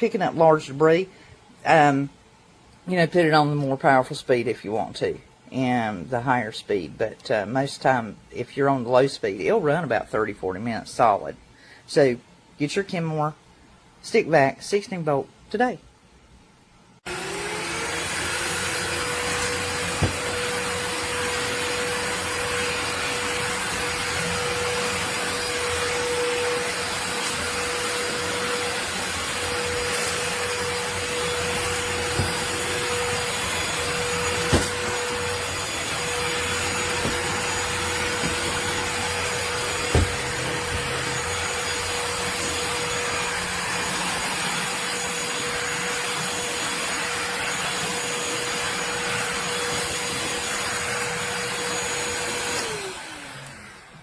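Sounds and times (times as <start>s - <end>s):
cordless vacuum running: 17.0s - 54.0s.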